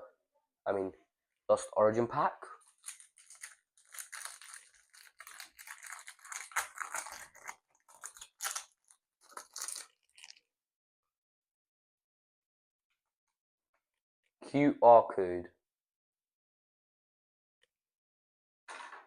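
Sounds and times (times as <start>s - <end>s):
foil wrapper tearing and crinkling: 2.6s - 10.4s.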